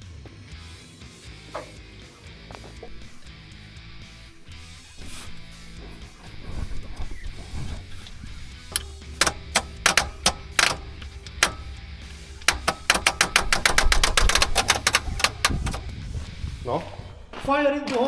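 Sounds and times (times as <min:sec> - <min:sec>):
background music: 0:00.0 - 0:18.0
sharp clicks or taps: 0:08.7 - 0:16.0.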